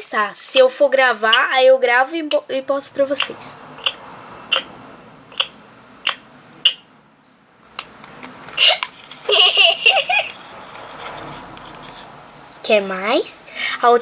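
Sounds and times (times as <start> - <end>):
doll's electronic laugh: 8.6 - 11.0.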